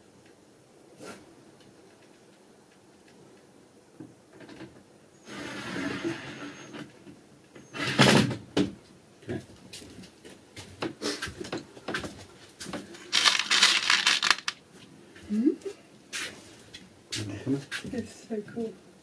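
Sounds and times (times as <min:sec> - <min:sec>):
scraping slide: 0:05.3 - 0:06.7.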